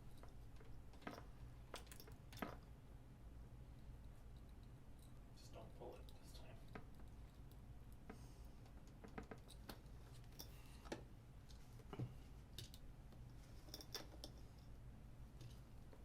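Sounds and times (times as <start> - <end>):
hand tools and wire clicking: 0.0 - 2.7
faint low hum: 0.0 - 16.0.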